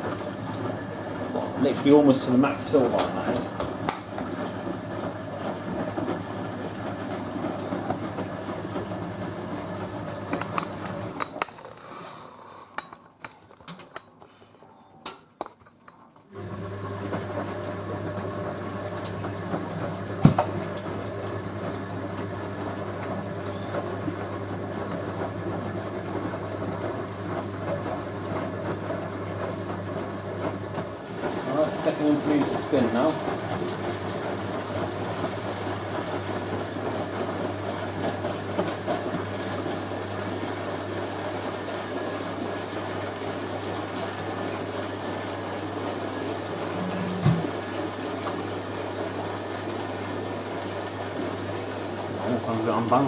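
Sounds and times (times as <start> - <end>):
drain pump humming: 0.0 - 12.7, 16.3 - 53.0
washing machine water churning: 0.0 - 14.2, 16.2 - 53.0.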